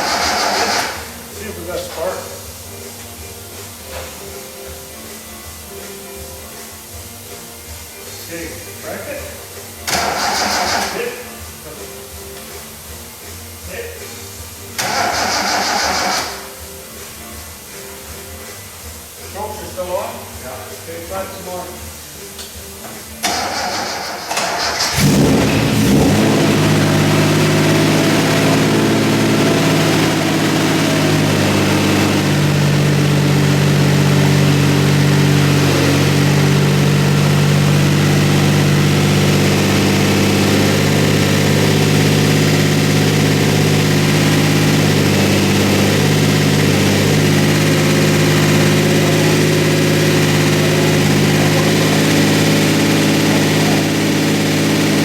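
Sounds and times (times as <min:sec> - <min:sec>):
car engine starting and idling: 0:00.0 - 0:02.7, 0:09.8 - 0:11.4, 0:14.8 - 0:16.6, 0:23.2 - 0:55.0.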